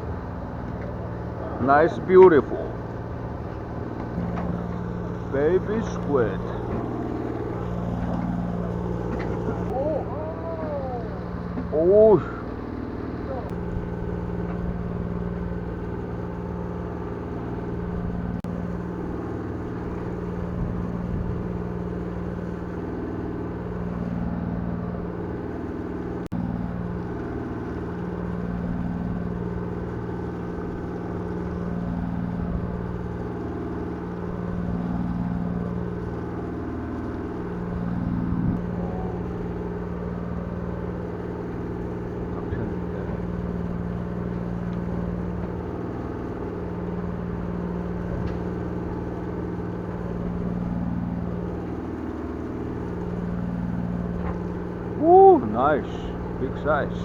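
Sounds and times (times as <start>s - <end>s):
boat engine wavering drone: 0.0s - 57.0s.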